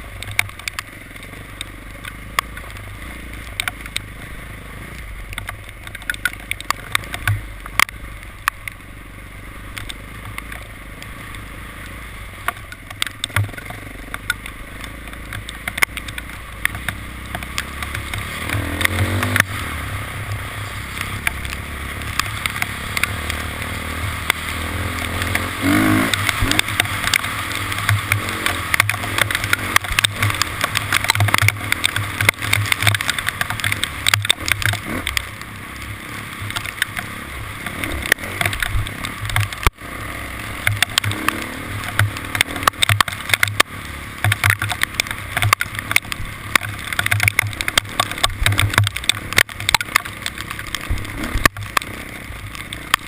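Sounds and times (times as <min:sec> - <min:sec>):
sharp clicks and knocks: 0:00.0 - 0:08.8, 0:09.7 - 0:39.8, 0:40.4 - 0:53.0
vehicle engine running: 0:00.0 - 0:53.0.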